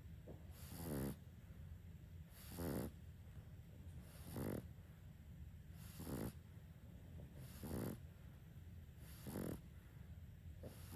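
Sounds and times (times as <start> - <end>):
dog snoring: 0.5 - 1.3, 2.3 - 3.0, 4.0 - 4.8, 5.7 - 6.5, 7.3 - 8.1, 8.9 - 9.7, 10.6 - 10.9.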